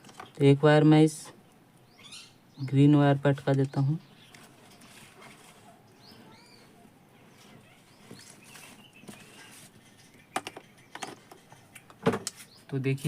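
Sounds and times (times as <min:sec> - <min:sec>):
clicks and handling noises: 0:00.0 - 0:00.4, 0:03.3 - 0:05.8
faint chirping: 0:01.5 - 0:12.8.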